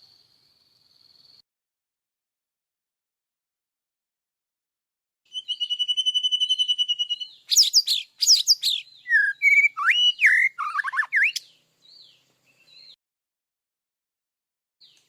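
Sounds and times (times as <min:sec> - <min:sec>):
bird singing: 0:05.3 - 0:13.0.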